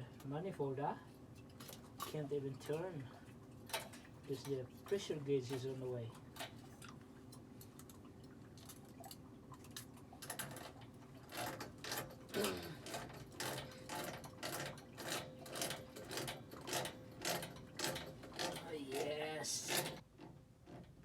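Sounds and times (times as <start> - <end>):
wrench clanking on pipe fittings: 11.3 - 20.0.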